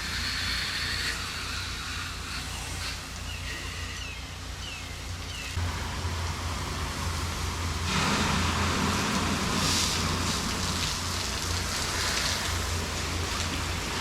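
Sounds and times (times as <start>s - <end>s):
water spray hissing: 0.0s - 4.5s, 7.8s - 14.0s
pressure washer engine drone: 0.0s - 14.0s.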